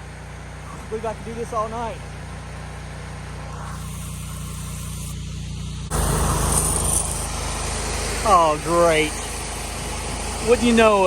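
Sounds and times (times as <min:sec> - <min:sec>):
pressure washer engine running: 0:00.0 - 0:11.0
high-pressure water spray hiss: 0:02.6 - 0:11.0.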